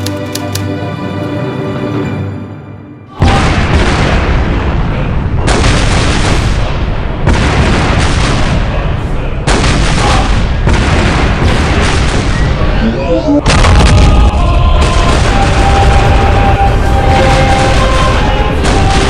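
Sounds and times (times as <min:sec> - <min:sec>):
gunfire and booms: 0:03.2 - 0:12.8, 0:13.4 - 0:19.0.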